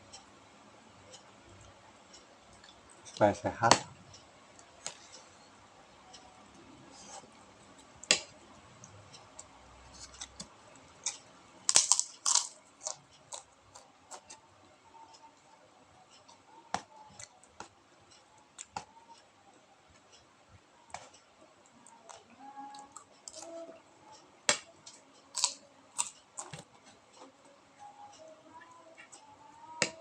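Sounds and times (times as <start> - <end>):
crunchy crackers being eaten: 11.0 - 14.3, 25.3 - 26.6.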